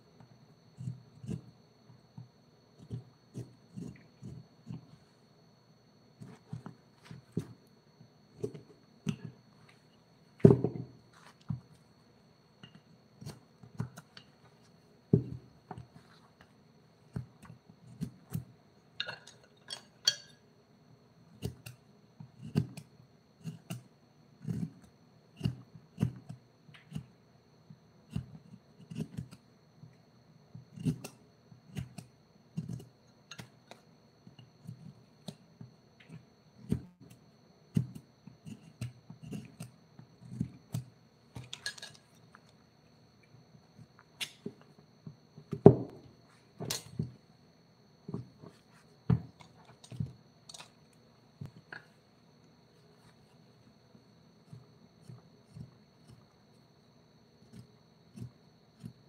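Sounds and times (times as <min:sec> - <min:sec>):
carving tools tapping on wood: 0:45.5 - 0:46.1.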